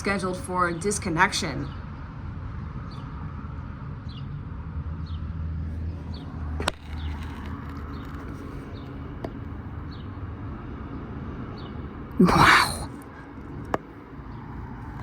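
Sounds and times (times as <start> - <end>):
low rumble of traffic: 0.0 - 15.0.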